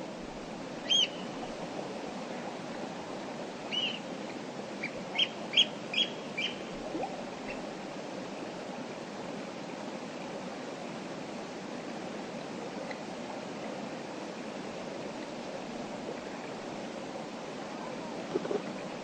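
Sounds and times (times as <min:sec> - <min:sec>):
bird calling and chirping: 0:00.8 - 0:01.2, 0:03.7 - 0:04.0, 0:05.2 - 0:06.6.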